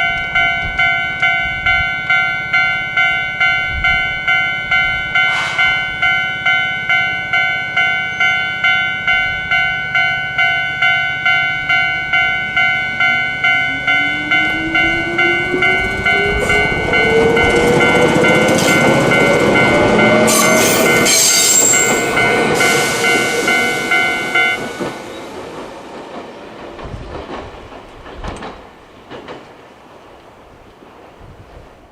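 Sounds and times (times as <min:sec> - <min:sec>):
level crossing alarm pulsing: 0:00.0 - 0:25.4
wind on microphone: 0:00.1 - 0:02.1, 0:03.6 - 0:06.1, 0:13.6 - 0:21.1, 0:26.6 - 0:28.6, 0:30.4 - 0:31.9
train motor whine: 0:12.9 - 0:25.4
train wheel clatter: 0:13.0 - 0:31.9.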